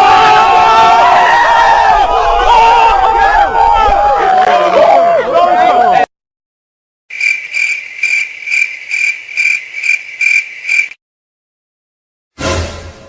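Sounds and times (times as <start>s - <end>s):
loud sound effect: 12.4s - 13.0s.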